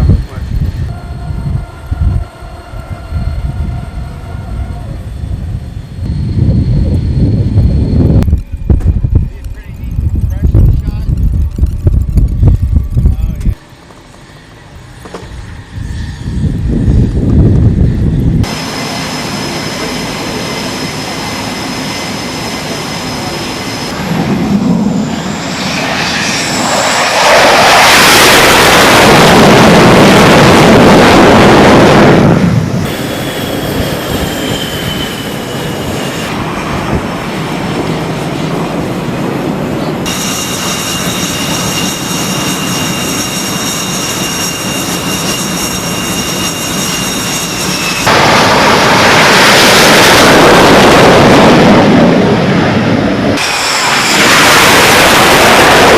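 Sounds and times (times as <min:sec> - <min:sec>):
jet engines whining: 0:00.0 - 0:55.9
loud jet noise surge: 0:13.0 - 0:55.9.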